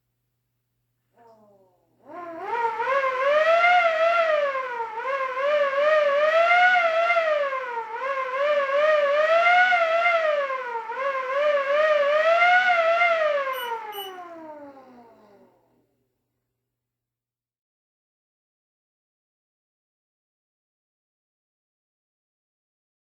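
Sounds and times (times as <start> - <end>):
motor-driven siren winding: 13.5 - 15.4.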